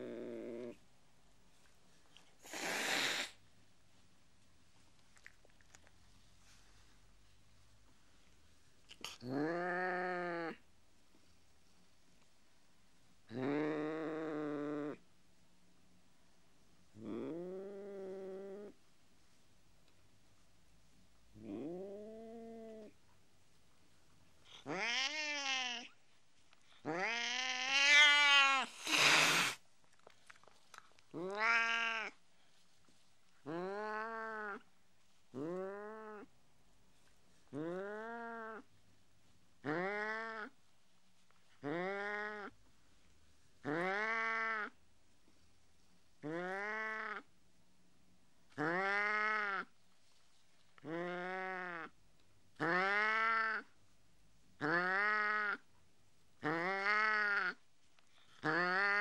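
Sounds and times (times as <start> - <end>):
cat hissing: 2.4 - 3.4, 26.9 - 29.6
cat meowing: 24.6 - 25.9, 26.9 - 29.6, 31.2 - 32.2.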